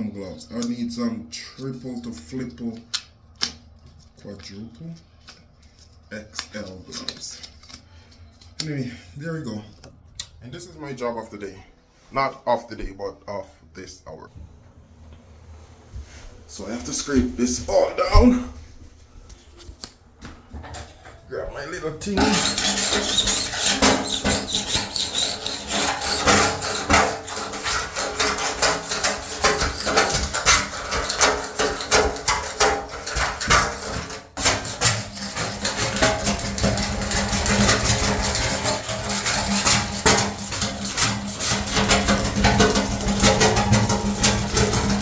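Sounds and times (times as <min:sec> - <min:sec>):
hand scraper rasping: 0:22.2 - 0:45.0.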